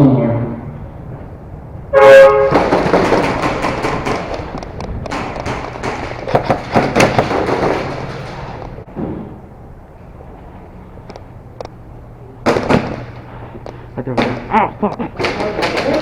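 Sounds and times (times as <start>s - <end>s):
horn blast: 1.9s - 2.7s
airsoft guns firing bursts: 2.5s - 8.1s
pellets cracking against walls: 2.5s - 8.8s, 12.4s - 13.3s, 15.2s - 16.0s.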